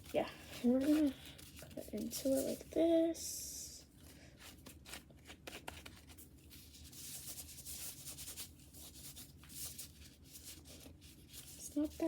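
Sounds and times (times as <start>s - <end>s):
slime rubbing and scraping: 0.0s - 2.8s.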